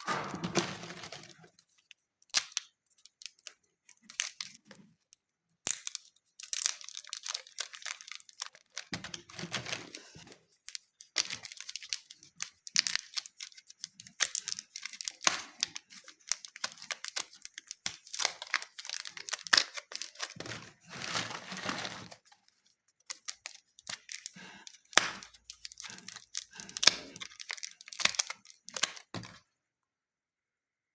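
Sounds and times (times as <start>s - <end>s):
slime crackling and tearing: 5.6s - 21.6s, 23.0s - 29.2s.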